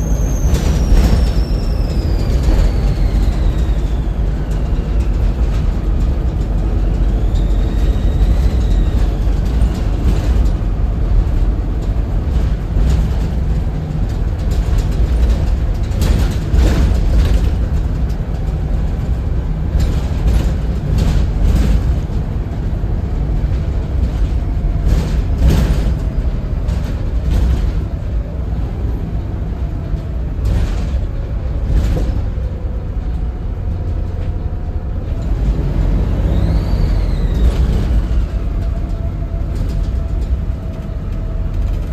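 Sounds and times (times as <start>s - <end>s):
faint turbo whistle: 0.0s - 10.6s, 35.2s - 41.7s
bus diesel engine rumbling: 0.0s - 41.9s.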